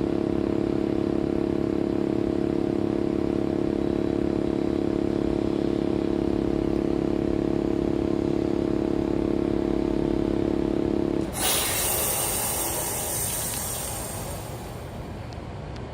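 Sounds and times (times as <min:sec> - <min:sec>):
heat pump compressor hum: 0:11.2 - 0:15.3.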